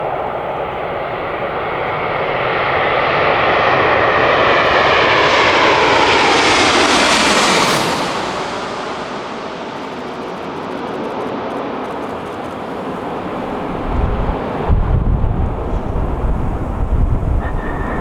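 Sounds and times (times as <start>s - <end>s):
jet airliner passing overhead: 0.0s - 18.0s
engine whine sliding down in pitch: 12.0s - 18.0s.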